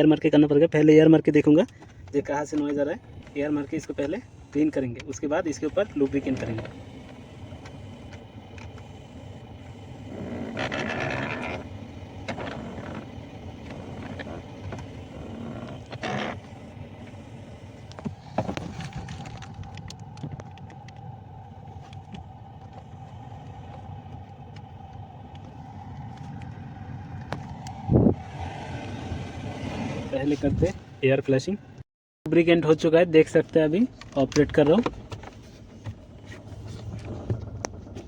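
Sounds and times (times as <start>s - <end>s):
steady hum: 1.6s - 33.9s
compressed air hissing blasts: 3.0s - 19.3s.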